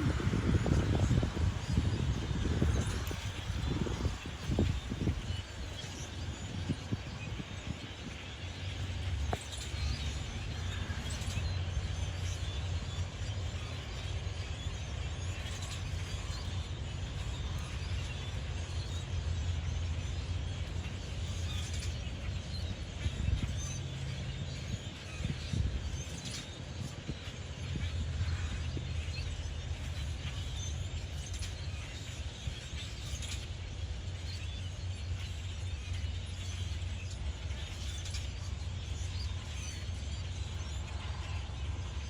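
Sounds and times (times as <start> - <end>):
steady low rumble: 0.0 - 26.0
birds chirping: 0.0 - 42.0.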